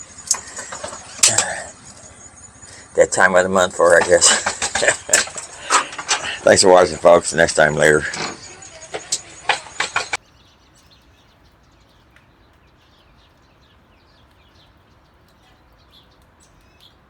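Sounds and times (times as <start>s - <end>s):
sharp clicks and rattles: 0.0s - 10.2s
faint birds chirping: 0.0s - 17.0s.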